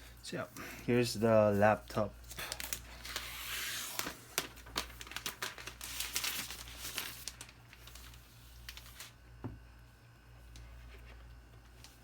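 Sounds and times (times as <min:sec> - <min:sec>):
plastic packaging crinkling: 0:01.6 - 0:09.2.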